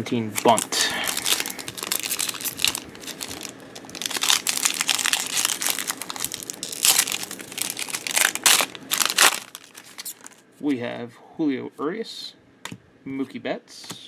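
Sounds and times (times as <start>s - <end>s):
plastic wrapper tearing and crinkling: 0.3s - 10.4s.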